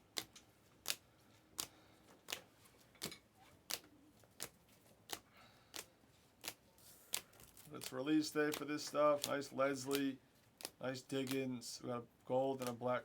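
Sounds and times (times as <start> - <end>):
trading card snaps: 5.8 - 11.4.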